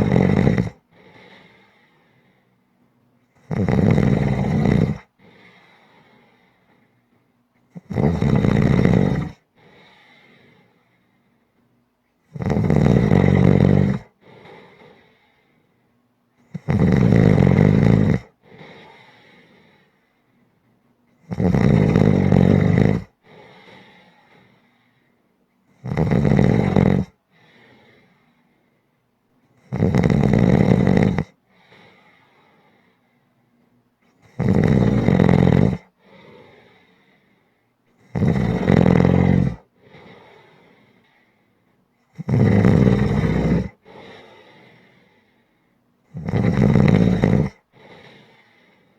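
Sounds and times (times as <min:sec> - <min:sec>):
loud snoring: 0:00.0 - 0:01.8, 0:03.4 - 0:05.8, 0:07.7 - 0:10.6, 0:12.3 - 0:15.2, 0:16.5 - 0:19.7, 0:21.2 - 0:24.4, 0:25.7 - 0:28.0, 0:29.6 - 0:32.2, 0:34.2 - 0:36.9, 0:38.0 - 0:40.8, 0:42.1 - 0:44.8, 0:46.1 - 0:48.6
quiet breath: 0:00.0 - 0:03.5, 0:04.1 - 0:07.9, 0:08.9 - 0:12.4, 0:13.6 - 0:16.7, 0:18.2 - 0:21.2, 0:22.5 - 0:25.8, 0:26.6 - 0:29.7, 0:31.2 - 0:46.2, 0:46.8 - 0:48.9.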